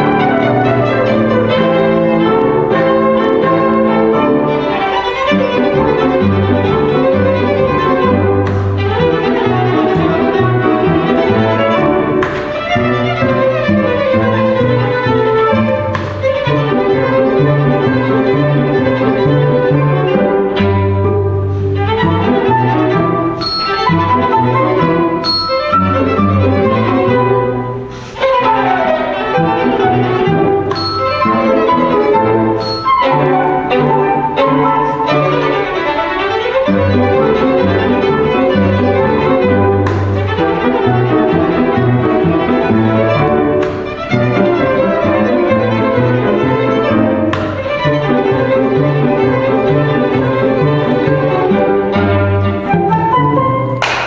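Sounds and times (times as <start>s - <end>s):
cello bass line: 0.0s - 53.9s
flute: 0.0s - 54.0s
piano: 0.0s - 54.0s
violin: 0.0s - 54.0s
sharp percussive strikes: 8.4s - 10.3s, 11.7s - 13.8s, 23.4s - 24.1s, 30.6s - 31.4s, 53.8s - 54.0s
sharp strikes: 12.1s - 13.2s, 53.8s - 54.0s.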